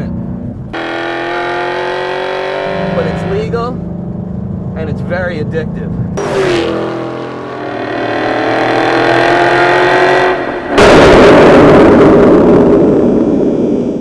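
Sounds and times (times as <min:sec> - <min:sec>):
car engine revving: 0:00.0 - 0:13.8
loud exhaust note: 0:00.0 - 0:14.0.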